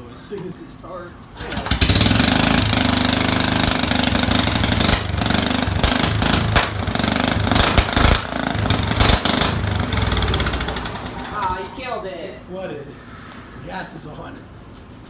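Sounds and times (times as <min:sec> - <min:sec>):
lawnmower engine running loud: 0:01.4 - 0:11.6
exhaust pops: 0:01.4 - 0:11.8.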